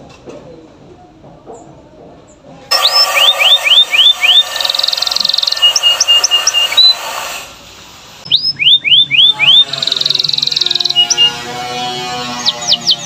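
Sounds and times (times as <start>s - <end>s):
canary singing: 2.7s - 7.1s, 8.2s - 13.0s.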